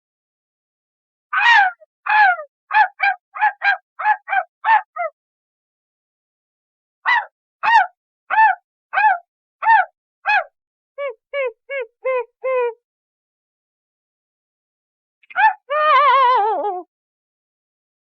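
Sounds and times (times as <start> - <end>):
high-pitched cartoon voice calls: 1.4 - 5.1, 7.1 - 12.8, 15.3 - 16.9.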